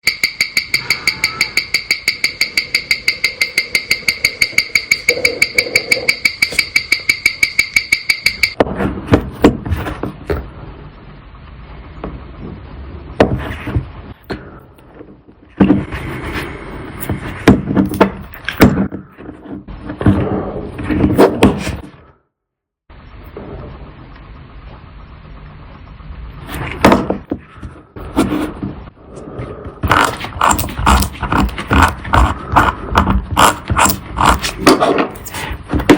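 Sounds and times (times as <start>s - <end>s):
rapid ringing ticking: 0.0s - 8.6s.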